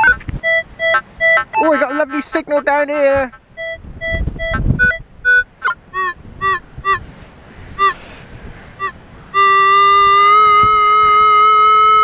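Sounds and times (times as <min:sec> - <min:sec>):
metal detector beeps: 0:00.0 - 0:01.8, 0:03.6 - 0:07.0
metal detector steady tone: 0:00.0 - 0:01.8, 0:03.6 - 0:07.0.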